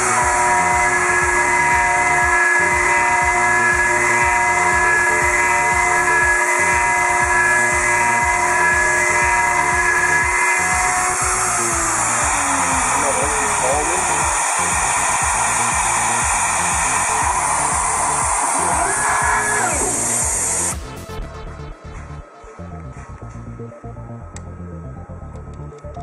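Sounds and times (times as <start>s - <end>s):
cutting into metal: 0.0s - 20.8s
router spindle whine: 0.0s - 21.0s.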